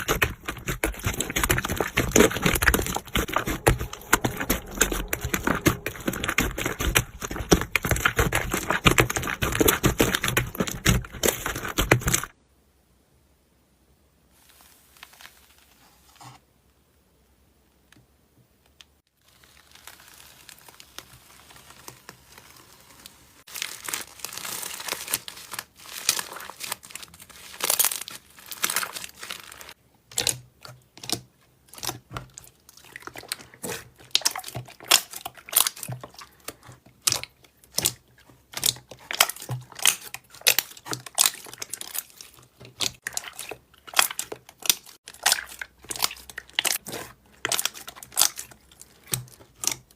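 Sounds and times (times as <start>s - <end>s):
slime crinkling and crackling: 0.0s - 12.3s, 19.2s - 30.4s, 31.0s - 49.9s
soft rustle: 14.3s - 16.5s, 19.2s - 24.4s.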